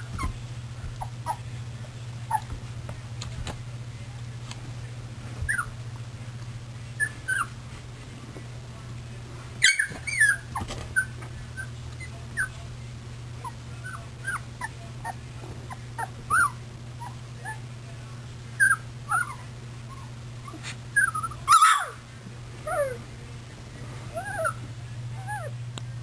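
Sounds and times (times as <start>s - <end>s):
puppies whimpering and squeaking: 0.0s - 0.4s, 1.0s - 1.4s, 9.6s - 12.5s, 13.4s - 17.6s, 18.6s - 22.0s, 22.7s - 23.0s, 24.1s - 25.6s
steady low hum: 0.0s - 26.0s.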